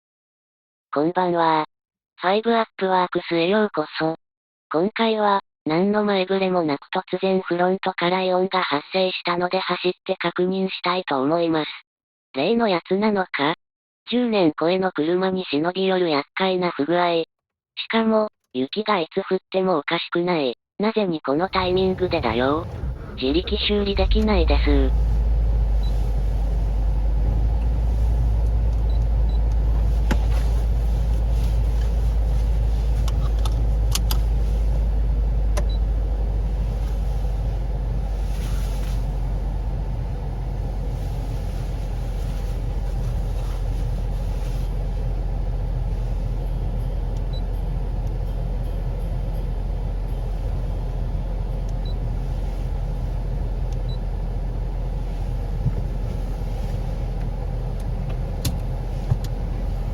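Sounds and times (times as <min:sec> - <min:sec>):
car engine and road rumble: 0:21.4 - 0:59.9.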